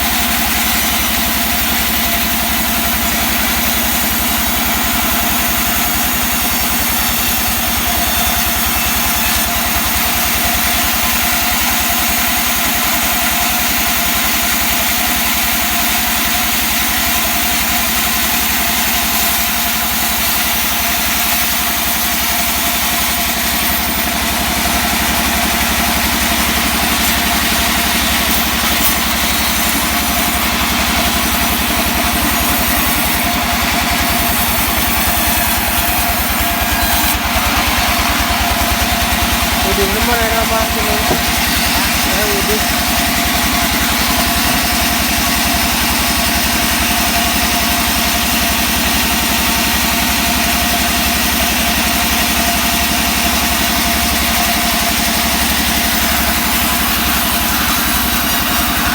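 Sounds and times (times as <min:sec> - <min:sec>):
wood saw engine running: 0:00.0 - 0:58.9.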